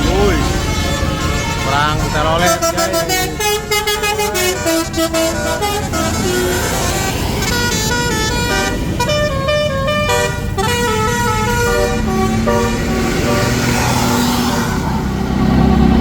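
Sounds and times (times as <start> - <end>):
musical air horn melody: 0.0 - 14.2
bus engine rumble: 0.0 - 16.0.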